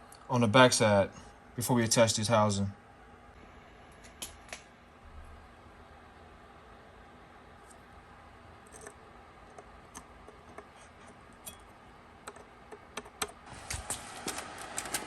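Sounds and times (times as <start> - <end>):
small parts and tools clicking: 8.6 - 13.4.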